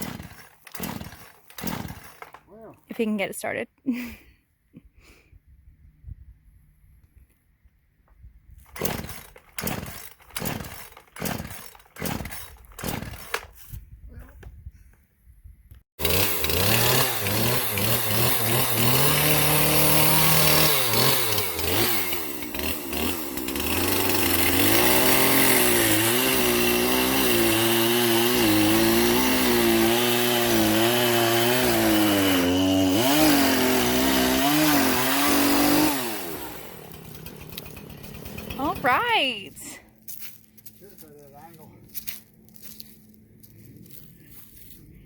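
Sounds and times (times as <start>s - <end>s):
chainsaw cutting wood: 0.0s - 2.5s, 8.6s - 13.6s, 16.0s - 39.8s.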